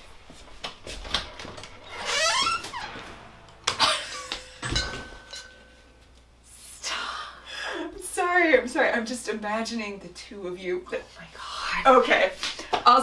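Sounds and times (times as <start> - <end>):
door squeaking: 1.2 - 5.2.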